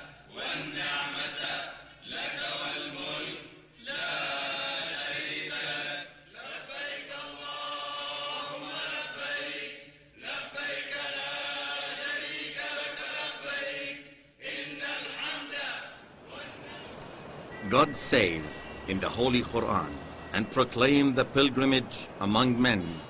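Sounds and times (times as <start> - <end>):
man chanting: 17.6 - 23.0.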